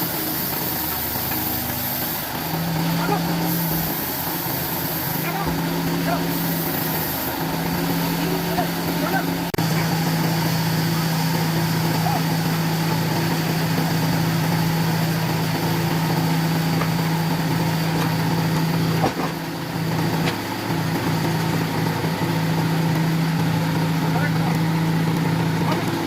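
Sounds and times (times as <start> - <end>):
machine motor humming: 0.0 - 20.8.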